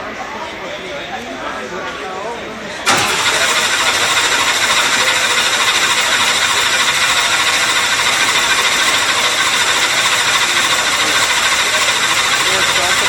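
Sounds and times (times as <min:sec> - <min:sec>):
speedboat engine running loud: 0:02.9 - 0:13.0.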